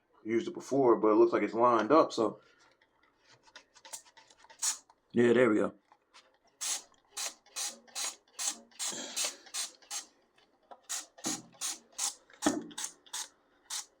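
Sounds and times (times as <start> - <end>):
spray bottle hissing: 3.9 - 4.8, 6.6 - 10.1, 10.8 - 14.0.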